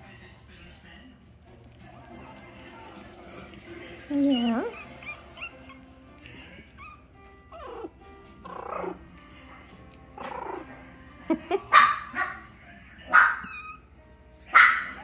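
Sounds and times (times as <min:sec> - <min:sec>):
small dog barking: 0:11.7 - 0:12.5, 0:13.1 - 0:13.8, 0:14.5 - 0:15.0.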